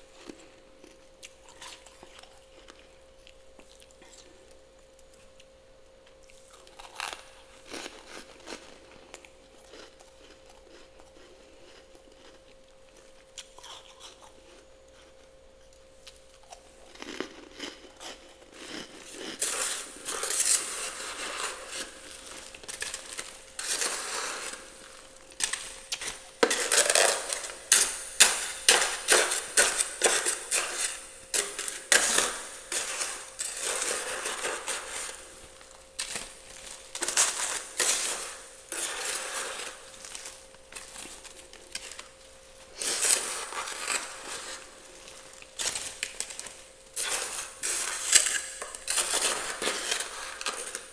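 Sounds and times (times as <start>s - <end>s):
scraping frost in a freezer: 18.0s - 50.9s.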